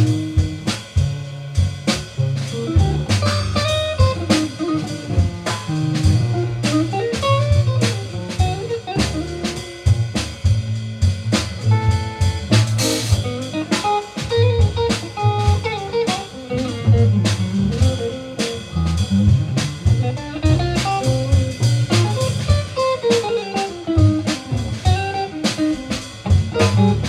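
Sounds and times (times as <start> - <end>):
live band playing blues: 0.0 - 27.0
guitar solo: 2.6 - 9.9, 12.8 - 19.3, 19.9 - 27.0.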